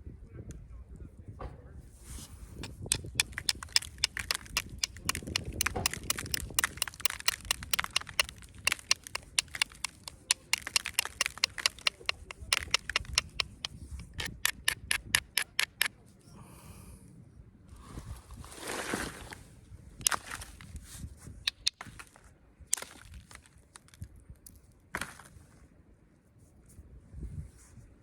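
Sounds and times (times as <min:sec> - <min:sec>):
flint knapping clicks: 0:02.6 - 0:15.9, 0:21.4 - 0:22.1.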